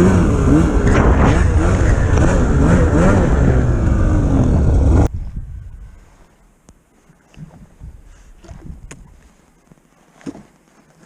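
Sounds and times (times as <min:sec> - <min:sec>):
snowmobile engine revving: 0:00.0 - 0:05.1.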